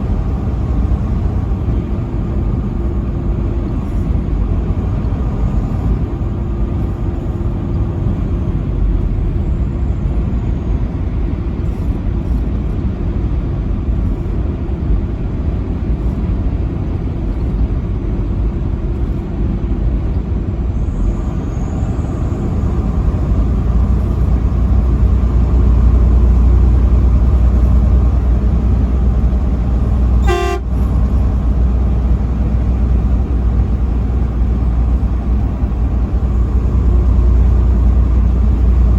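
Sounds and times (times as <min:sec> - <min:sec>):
highway driving rumble: 0:00.0 - 0:38.9
truck horn blast: 0:30.1 - 0:30.9.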